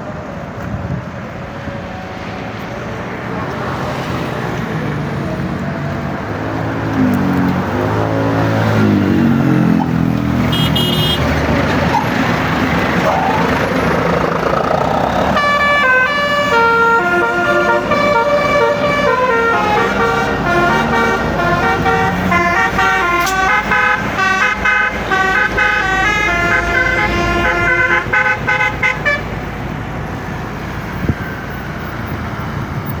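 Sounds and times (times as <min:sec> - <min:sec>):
bus engine: 0:00.0 - 0:33.0
traffic noise: 0:00.0 - 0:33.0
air horn playing melody: 0:10.5 - 0:11.3, 0:15.3 - 0:29.3.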